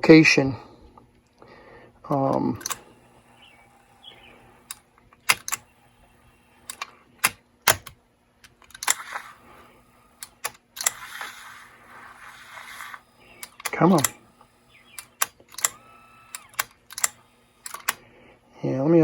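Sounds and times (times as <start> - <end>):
tape player button clicks: 2.1 - 18.0
soft scraping hiss: 8.8 - 14.8.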